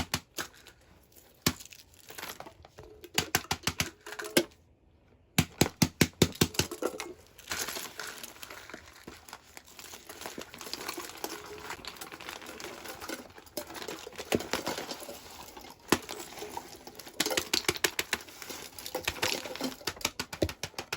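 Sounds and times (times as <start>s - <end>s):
crinkling: 0.0s - 20.9s
plastic clicking and tapping: 19.8s - 20.9s.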